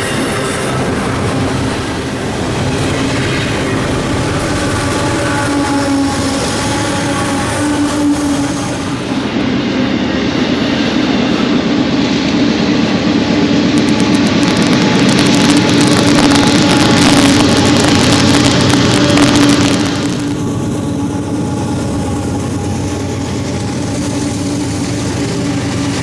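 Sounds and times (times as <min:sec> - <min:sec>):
diesel locomotive engines droning: 0:00.0 - 0:26.0
freight train rumbling past: 0:00.0 - 0:26.0.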